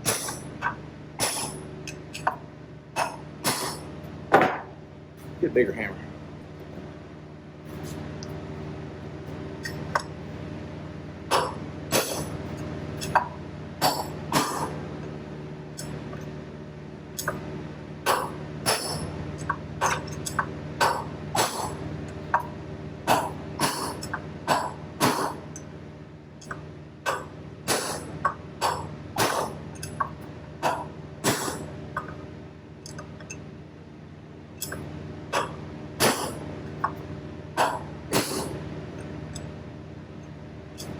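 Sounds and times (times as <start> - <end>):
steady hum: 0.0 - 40.9.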